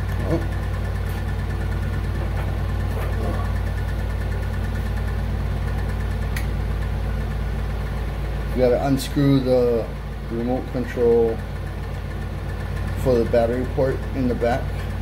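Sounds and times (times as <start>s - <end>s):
low engine-like hum: 0.0s - 15.0s.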